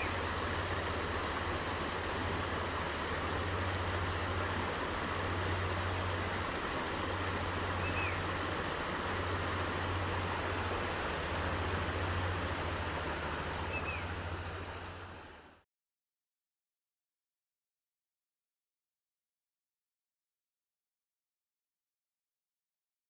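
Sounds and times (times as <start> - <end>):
stream water rushing: 0.0 - 15.6
bird chirping: 7.8 - 8.3, 13.6 - 14.1.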